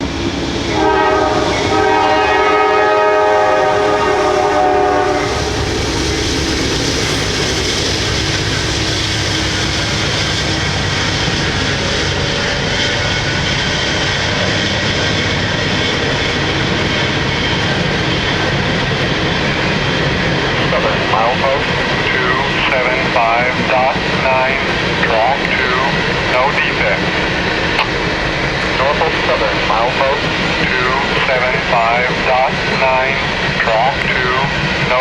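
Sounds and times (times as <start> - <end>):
locomotive rumble: 0.0 - 35.0
train wheels rolling: 0.0 - 35.0
locomotive horn: 0.7 - 5.6.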